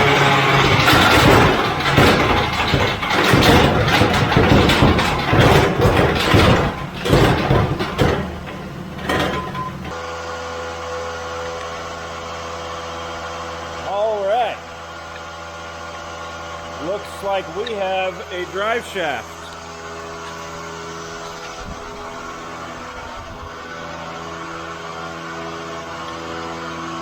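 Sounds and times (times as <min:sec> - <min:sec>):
driveshaft knocking and clattering: 0:00.0 - 0:10.0
engine idling: 0:00.0 - 0:27.0
engine running on dyno: 0:00.0 - 0:27.0.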